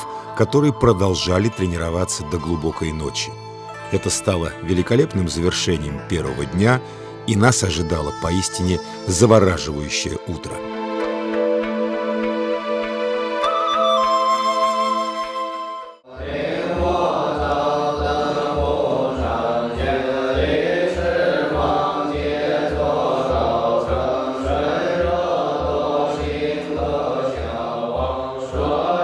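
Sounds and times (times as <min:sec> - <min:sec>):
monks chanting in unison: 0:16.1 - 0:29.0.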